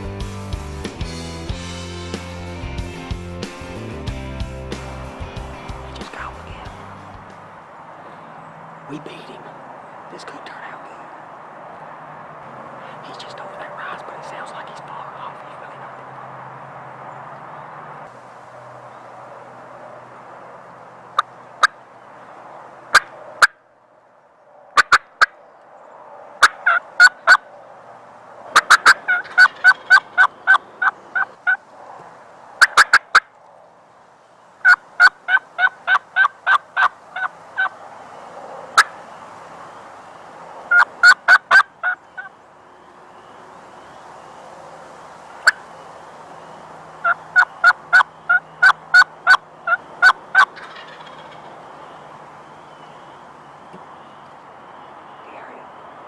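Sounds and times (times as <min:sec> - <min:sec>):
wild turkey yelping: 0:21.2 - 0:21.8, 0:24.8 - 0:25.4, 0:26.4 - 0:27.6, 0:28.5 - 0:33.3, 0:34.6 - 0:37.8, 0:38.8 - 0:39.0, 0:40.7 - 0:42.4, 0:45.4 - 0:45.7, 0:46.4 - 0:55.6.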